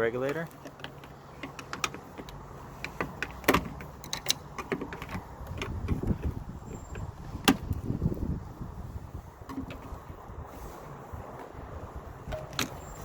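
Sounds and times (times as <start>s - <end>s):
clicks and knocks in car door: 0.7s - 6.3s.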